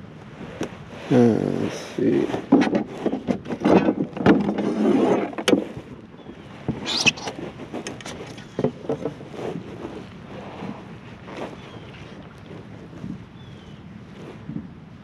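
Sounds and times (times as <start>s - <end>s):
wind on microphone: 0.0s - 15.0s
short high squeak: 6.8s - 7.4s.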